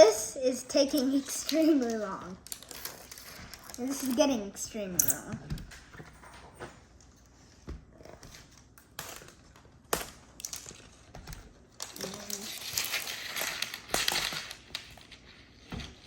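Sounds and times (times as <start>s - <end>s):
packaging crinkling: 8.4s - 15.7s.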